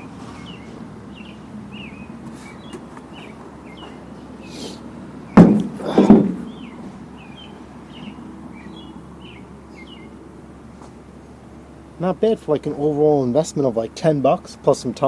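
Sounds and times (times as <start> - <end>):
loud knocks with ring-out: 5.4 - 6.6.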